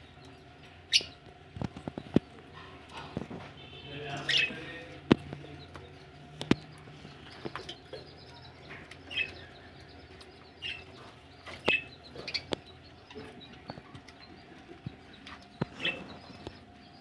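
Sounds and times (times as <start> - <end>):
budgerigars chirping: 0.6 - 17.0.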